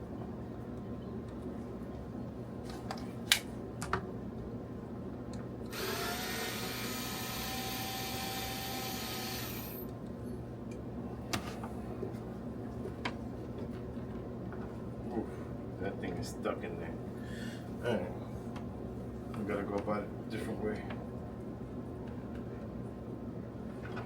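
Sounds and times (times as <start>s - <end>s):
power drill running: 5.7s - 9.8s.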